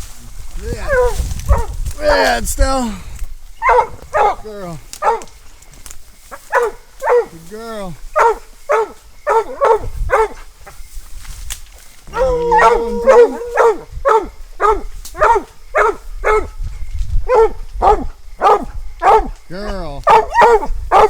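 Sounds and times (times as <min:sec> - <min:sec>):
hounds barking: 0:00.8 - 0:02.4, 0:03.6 - 0:05.4, 0:06.3 - 0:10.6, 0:12.1 - 0:16.6, 0:17.2 - 0:19.4, 0:20.0 - 0:21.0
hound bawling: 0:12.1 - 0:16.5.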